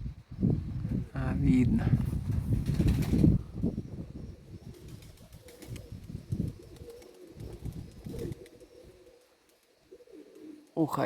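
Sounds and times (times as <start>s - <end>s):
wind rumbling on microphone: 0.0s - 9.0s
pigeons cooing: 2.8s - 10.8s.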